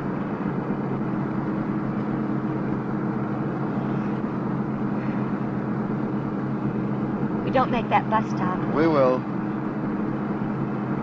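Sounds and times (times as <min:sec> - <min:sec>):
car engine running steadily: 0:00.0 - 0:11.0
rush of tyres and wind: 0:00.0 - 0:11.0.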